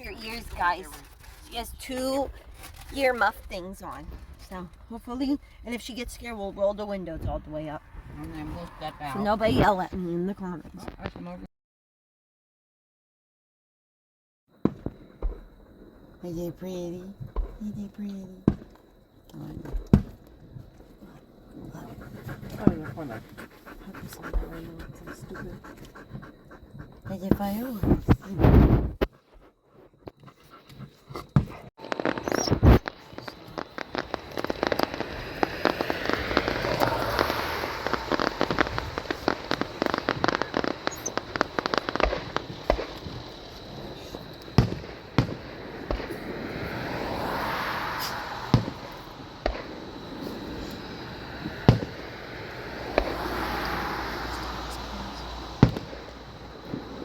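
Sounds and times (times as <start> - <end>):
fireworks bangs and crackle: 0.0 - 11.4, 14.6 - 25.5, 27.1 - 29.2, 31.3 - 57.0
loud firework booms: 14.6 - 16.4, 31.4 - 57.0.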